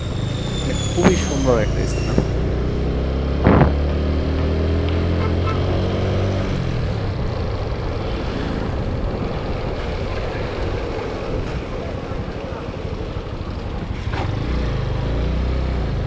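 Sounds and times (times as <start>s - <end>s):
motorcycle engine: 0.0s - 16.0s
road and wind noise: 0.0s - 16.0s
horn beep: 0.7s - 2.4s.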